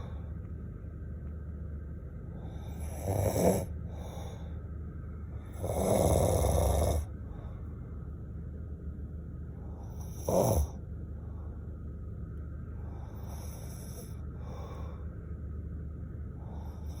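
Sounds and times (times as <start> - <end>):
person snoring: 2.7 - 3.7, 5.6 - 7.1, 10.0 - 10.8
weak breath: 3.9 - 4.7, 12.8 - 15.2.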